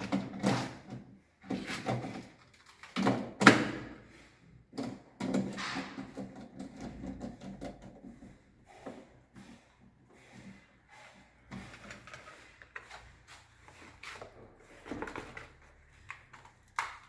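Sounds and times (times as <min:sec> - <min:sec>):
plastic circuit breakers clattering: 0:04.7 - 0:08.1.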